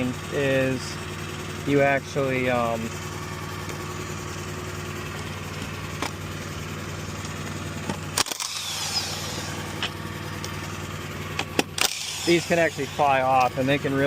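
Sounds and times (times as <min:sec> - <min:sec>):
engine idling: 0:00.0 - 0:14.0.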